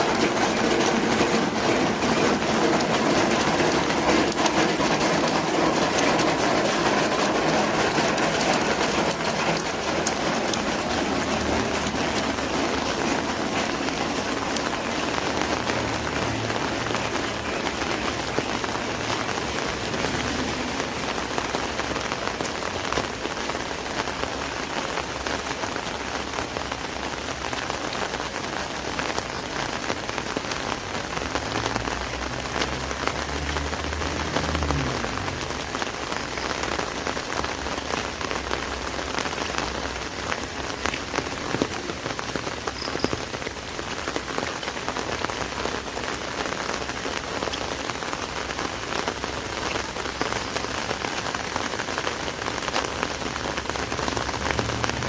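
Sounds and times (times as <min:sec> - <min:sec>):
rain drumming on an umbrella: 0:00.0 - 0:55.0
low rumble: 0:53.7 - 0:55.0.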